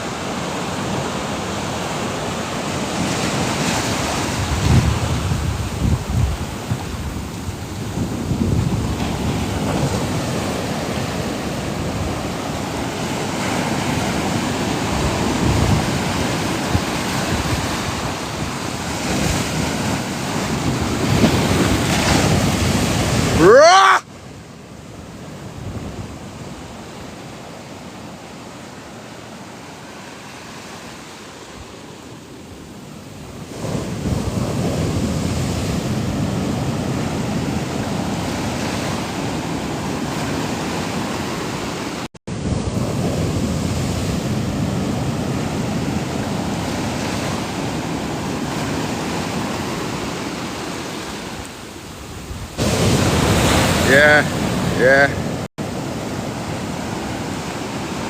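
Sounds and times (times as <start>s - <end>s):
ocean surf breaking: 0.0s - 58.0s
wind buffeting microphone: 3.5s - 23.4s.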